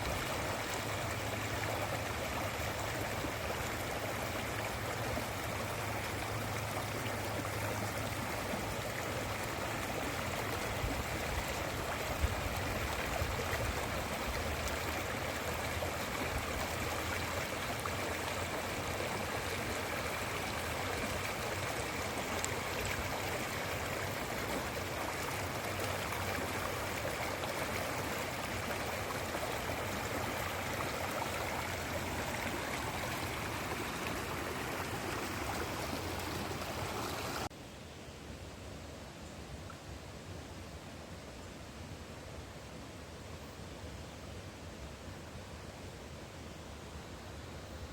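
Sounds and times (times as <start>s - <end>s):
river rushing over stones: 0.0s - 37.5s.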